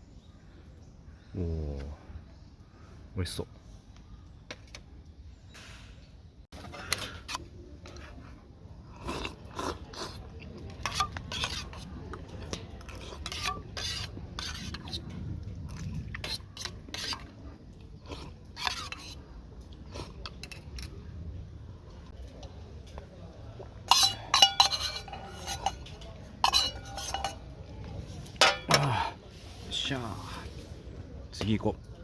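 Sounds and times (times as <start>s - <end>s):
metal utensils scraping dishes: 10.7s - 12.0s, 12.9s - 15.1s, 18.6s - 19.2s, 23.9s - 27.5s, 28.3s - 29.0s.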